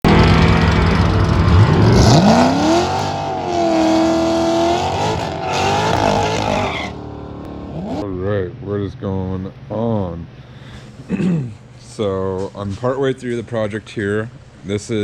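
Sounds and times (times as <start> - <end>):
vehicle engine revving: 0.0 - 8.1.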